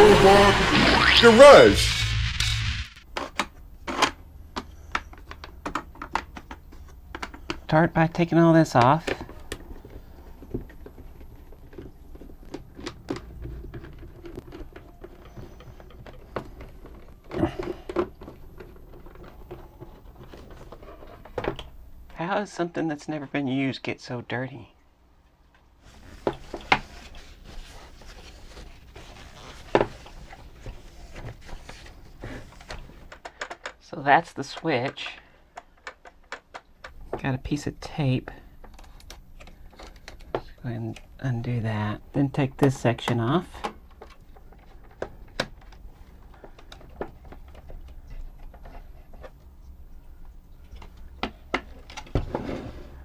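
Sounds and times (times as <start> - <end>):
plastic parts rubbing and rattling: 2.4 - 22.1, 25.8 - 33.8, 38.4 - 41.2, 43.0 - 53.0.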